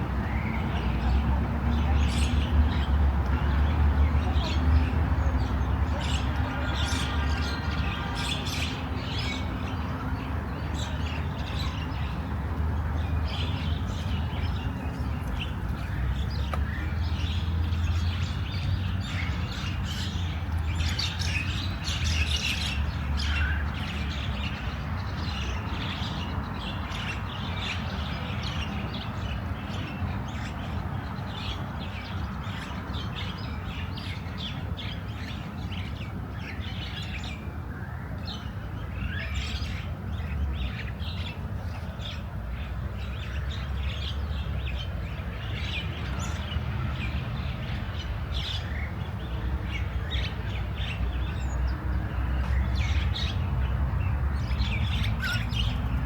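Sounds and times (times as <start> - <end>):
small birds chirping: 43.0 - 56.0.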